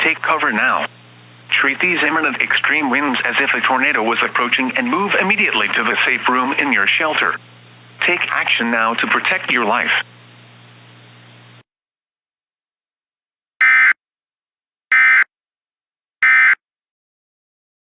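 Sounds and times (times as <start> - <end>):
faint steady hum: 0.0 - 11.6
digital data tone bursts: 13.6 - 14.0.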